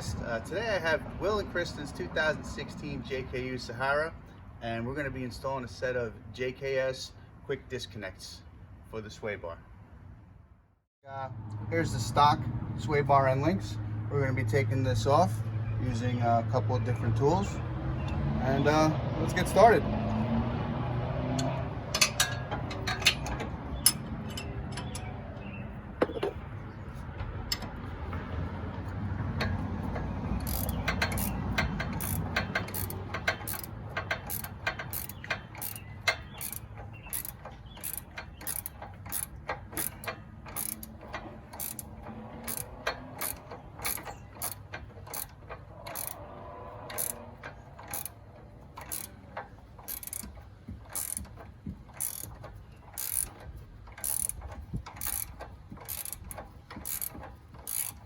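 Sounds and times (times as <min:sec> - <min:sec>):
hand ratchet clicking: 0:21.4 - 0:25.1, 0:29.3 - 0:46.2, 0:46.8 - 0:58.0.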